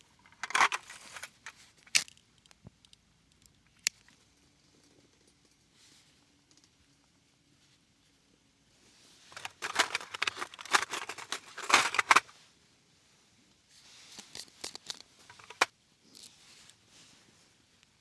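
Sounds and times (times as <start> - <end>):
crackling and rustling: 0.0 - 4.2, 9.3 - 12.3, 14.1 - 16.8.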